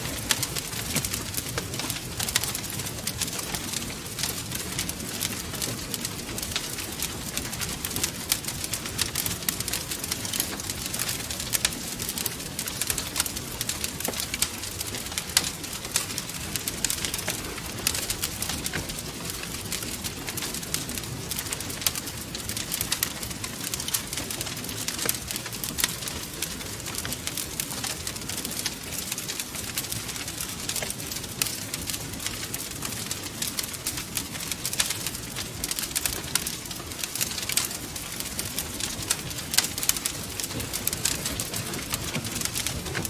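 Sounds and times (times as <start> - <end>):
wood fire crackling: 0.0 - 43.0.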